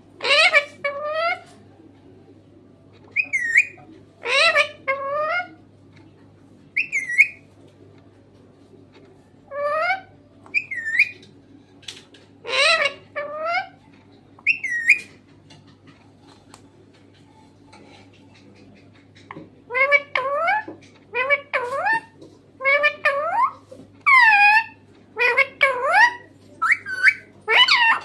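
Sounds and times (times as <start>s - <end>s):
parrot whistling and calling: 0.2s - 1.5s, 3.1s - 5.6s, 6.8s - 7.5s, 9.5s - 11.3s, 12.4s - 13.8s, 14.4s - 15.2s, 19.7s - 28.0s.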